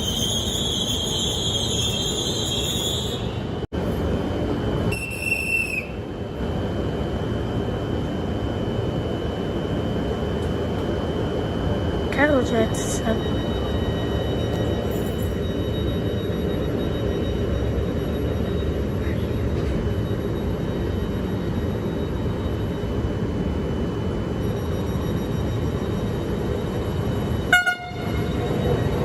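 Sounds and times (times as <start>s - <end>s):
faint high whine: 0.0s - 29.0s
train rumbling past: 26.4s - 29.0s
train horn toot: 27.5s - 28.3s.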